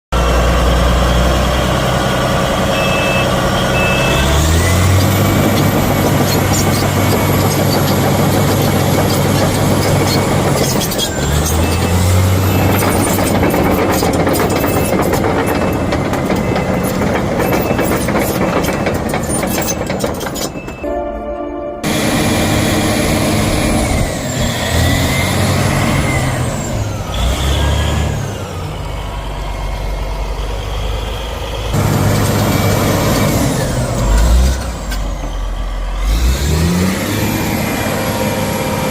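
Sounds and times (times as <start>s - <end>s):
bulldozer diesel engine revving: 0.2s - 20.4s, 21.8s - 38.9s
high whine: 20.8s - 24.0s.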